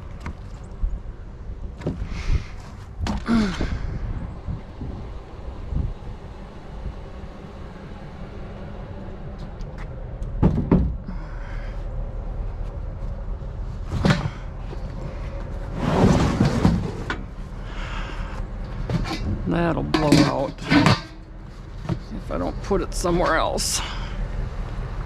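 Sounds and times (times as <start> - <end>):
steady low rumble: 0.0 - 25.0
scraping clatter: 13.8 - 17.5, 18.6 - 23.4
items banging while loaded: 13.9 - 14.5, 18.8 - 22.2.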